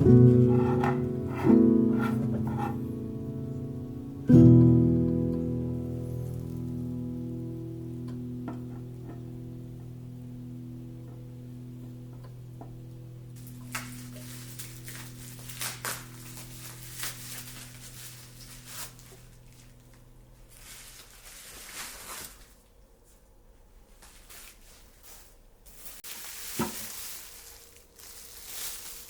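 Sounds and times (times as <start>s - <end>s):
steady low hum: 0.0s - 21.2s
small objects clicking and rustling: 13.4s - 20.0s, 25.7s - 29.0s.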